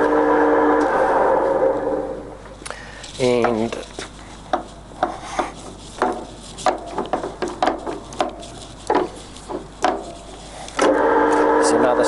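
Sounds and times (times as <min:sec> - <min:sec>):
metal lathe running: 0:10.8 - 0:12.0.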